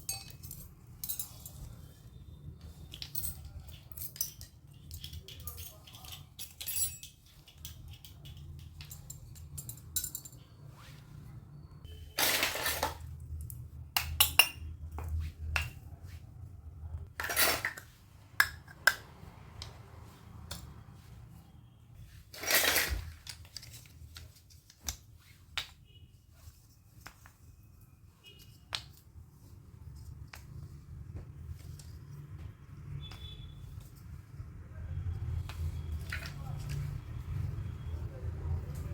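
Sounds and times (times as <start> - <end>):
plastic toy pieces clattering: 12.2 - 13.1, 22.3 - 25.0.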